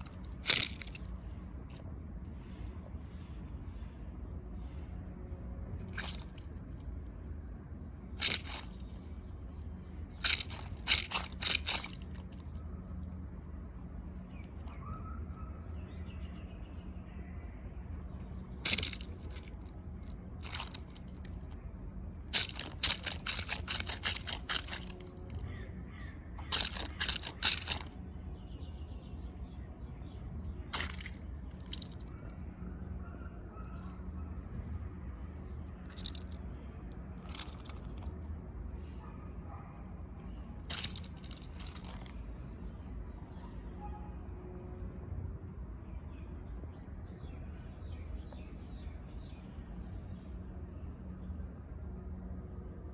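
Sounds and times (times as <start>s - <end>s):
squishy toy crunching: 0.0s - 1.1s, 5.8s - 6.8s, 8.2s - 9.1s, 10.1s - 12.7s, 18.6s - 21.6s, 22.3s - 25.5s, 26.4s - 28.0s, 30.7s - 32.2s, 35.8s - 36.6s, 37.2s - 38.1s, 40.6s - 42.1s.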